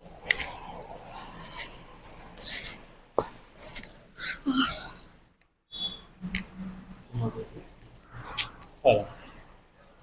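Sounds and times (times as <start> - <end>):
hands rubbing: 8.1 - 9.9.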